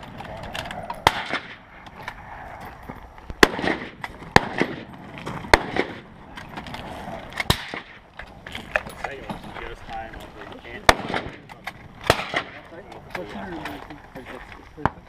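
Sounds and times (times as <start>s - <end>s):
faint distant rifle shots: 1.0s - 1.6s, 3.4s - 6.2s, 7.4s - 8.0s, 10.8s - 12.7s
loud rifle shots: 1.0s - 1.7s, 3.4s - 6.2s, 7.4s - 8.0s, 10.8s - 12.7s.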